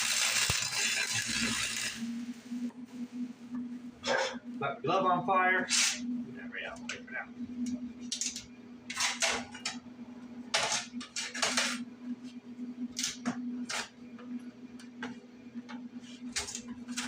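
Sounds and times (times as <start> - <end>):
welding crackling and hissing: 0.0 - 2.7, 5.6 - 6.1, 10.5 - 14.0, 16.0 - 17.0
steady hum: 0.0 - 17.0.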